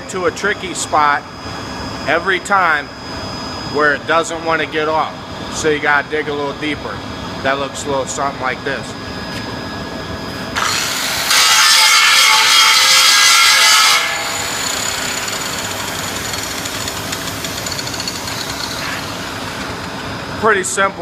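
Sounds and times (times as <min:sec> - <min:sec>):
power grinder cutting metal: 0:10.6 - 0:19.9.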